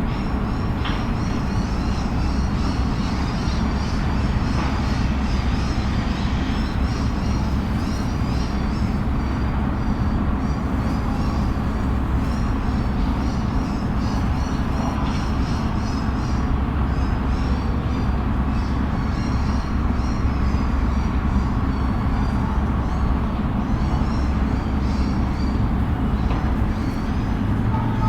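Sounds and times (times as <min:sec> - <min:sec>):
traffic rumble: 0:00.0 - 0:28.0.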